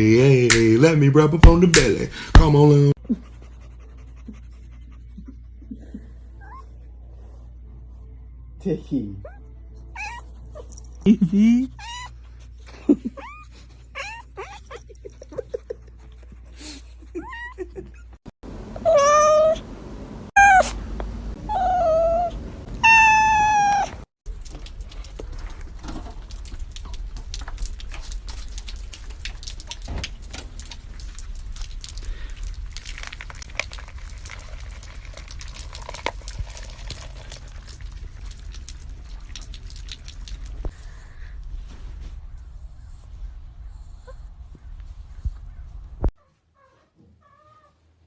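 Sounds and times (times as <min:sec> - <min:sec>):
cat meowing: 0:10.0 - 0:10.3, 0:18.8 - 0:19.6, 0:20.4 - 0:20.8, 0:21.4 - 0:24.1.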